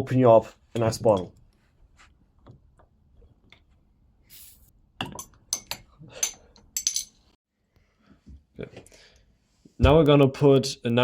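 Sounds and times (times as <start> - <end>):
bottle cap hiss: 4.3 - 4.7.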